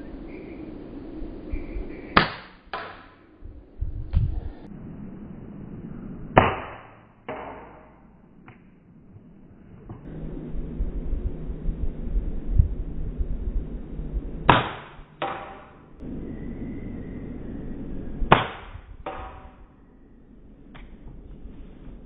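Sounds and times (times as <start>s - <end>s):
pellet striking target: 2.2s - 3.2s, 6.4s - 8.8s, 14.5s - 16.0s, 18.3s - 19.7s
low rumbling and knocking: 9.2s - 22.0s.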